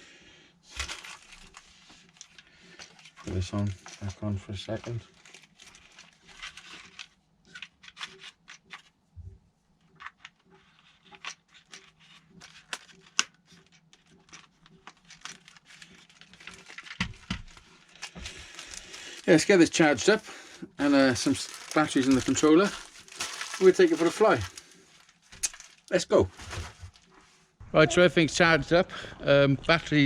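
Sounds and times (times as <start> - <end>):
plastic clicks and crinkling: 0.7 - 9.0, 9.8 - 19.4, 21.2 - 27.1.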